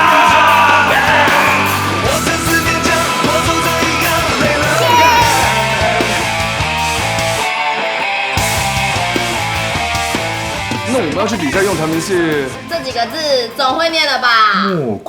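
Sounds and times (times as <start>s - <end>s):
loud rock music: 0.0s - 14.6s
drum strokes: 8.4s - 14.1s.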